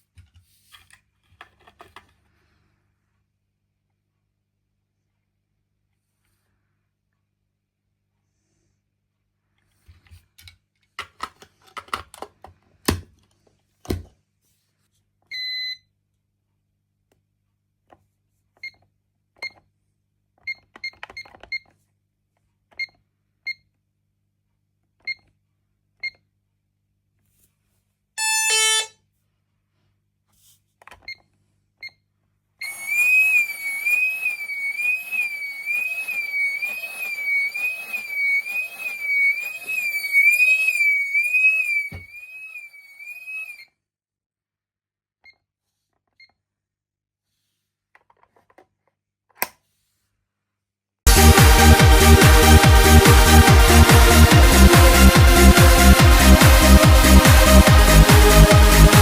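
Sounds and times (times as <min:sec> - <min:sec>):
keypad beeps: 0:28.2 - 0:28.9
stepped electronic tones: 0:28.2 - 0:28.9, 0:32.6 - 0:43.6
warbling alarm siren: 0:28.2 - 0:28.9, 0:32.6 - 0:43.6, 0:51.1 - 0:59.0.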